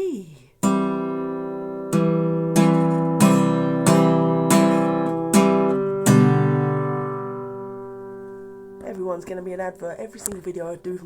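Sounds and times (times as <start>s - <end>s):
acoustic guitar strummed slowly: 0.6s - 9.3s.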